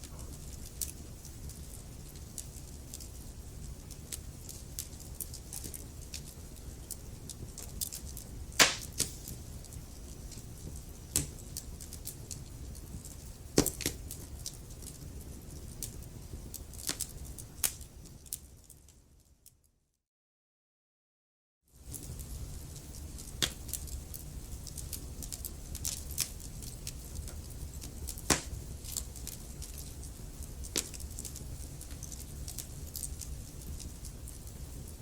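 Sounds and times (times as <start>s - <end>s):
wood fire crackling and popping: 0.0s - 19.3s, 21.8s - 35.0s
low rumble of flames: 0.0s - 19.4s, 21.8s - 35.0s.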